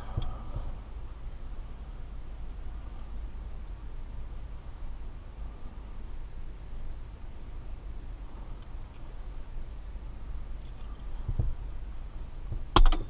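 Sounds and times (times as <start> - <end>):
wire clicking as it is bent: 12.7 - 13.0.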